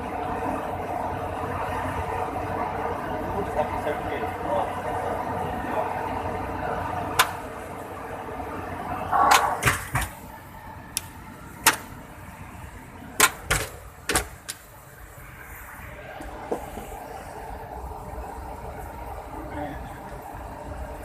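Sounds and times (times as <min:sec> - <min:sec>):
steady background rumble: 0:00.0 - 0:21.0
sharp knocks and clicks: 0:09.3 - 0:10.2, 0:13.2 - 0:14.6.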